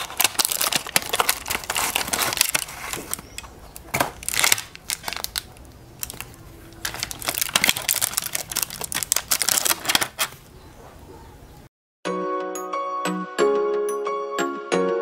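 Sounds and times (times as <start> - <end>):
plastic packaging crackling: 0.0 - 10.5
chime-like music: 12.1 - 15.0.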